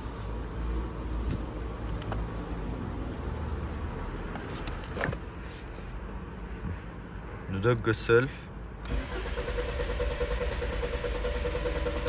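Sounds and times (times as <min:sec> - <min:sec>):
handling clicks and rattles: 0:01.8 - 0:05.2.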